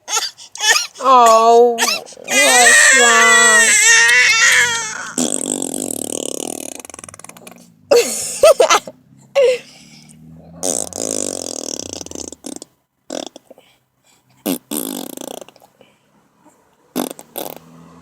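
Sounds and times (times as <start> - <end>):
baby farting: 1.8 - 7.7, 10.6 - 13.6, 14.4 - 15.7, 16.9 - 17.8.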